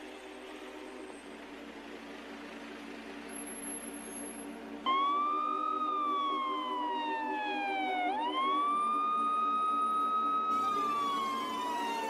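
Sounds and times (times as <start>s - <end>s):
siren tone falling: 4.9s - 12.0s.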